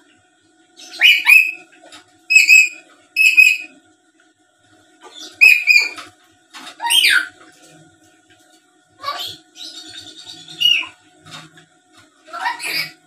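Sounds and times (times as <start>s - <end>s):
parrot whistled calls: 0.8s - 1.7s, 2.3s - 3.8s, 5.2s - 6.1s, 6.8s - 7.3s, 9.0s - 11.0s, 12.3s - 13.0s.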